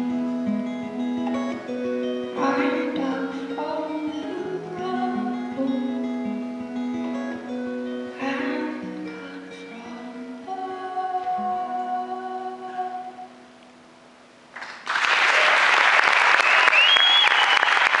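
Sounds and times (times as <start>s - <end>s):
acoustic song: 0.0s - 14.6s
audience applause: 14.6s - 18.0s
short whistle: 16.4s - 17.9s.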